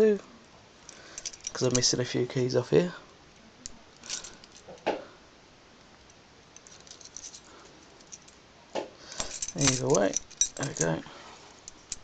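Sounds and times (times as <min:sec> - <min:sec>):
keys rattling on a ring: 0:00.9 - 0:02.0, 0:04.0 - 0:04.8, 0:06.6 - 0:08.4, 0:09.1 - 0:12.0
key scraping in a lock: 0:09.2 - 0:11.0.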